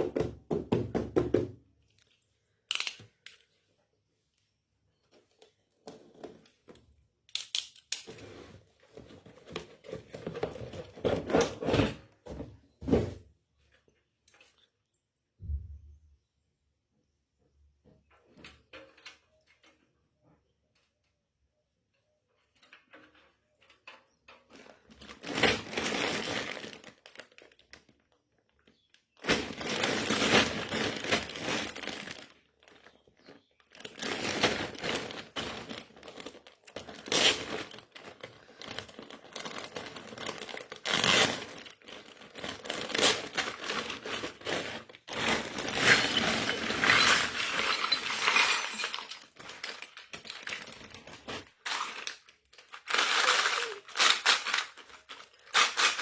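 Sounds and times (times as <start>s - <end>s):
plastic packaging crinkling: 24.5s - 56.0s.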